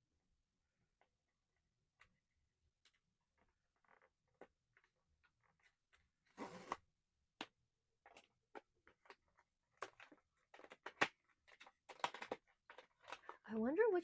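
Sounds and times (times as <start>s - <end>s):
plastic pieces clicking: 8.1s - 13.3s.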